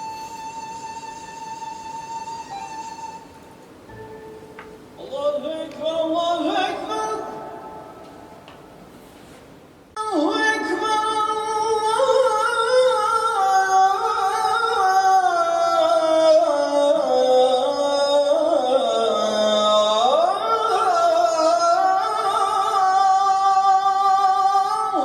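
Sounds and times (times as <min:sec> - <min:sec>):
call to prayer chanted: 0:05.0 - 0:08.8, 0:10.0 - 0:25.0.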